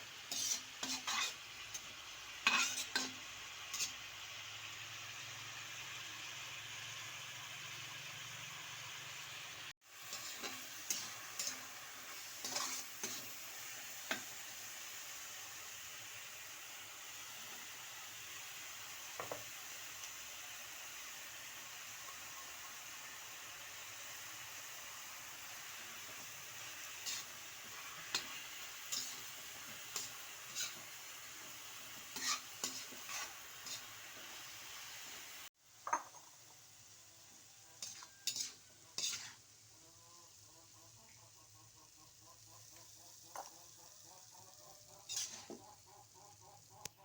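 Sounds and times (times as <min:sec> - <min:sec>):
food sizzling in a pan: 0:00.0 - 0:47.0
spatula scraping and knocking pan: 0:00.3 - 0:03.9, 0:10.0 - 0:13.4, 0:19.2 - 0:19.5, 0:27.0 - 0:31.0, 0:32.0 - 0:34.3, 0:37.8 - 0:39.4, 0:45.0 - 0:45.8.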